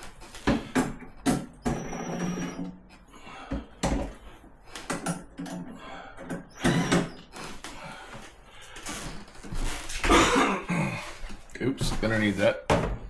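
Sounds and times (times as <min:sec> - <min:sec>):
ice maker knocks and clunks: 0:11.8 - 0:13.0.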